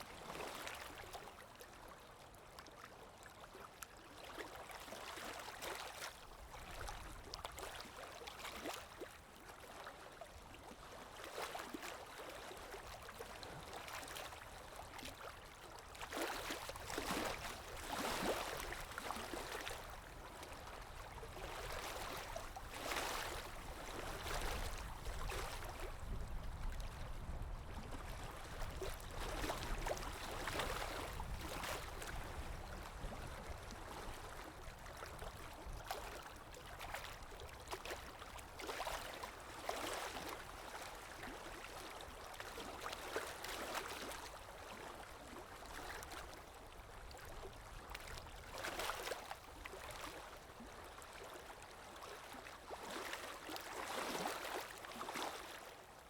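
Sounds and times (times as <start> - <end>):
calm sea waves washing in: 15.9 - 44.4.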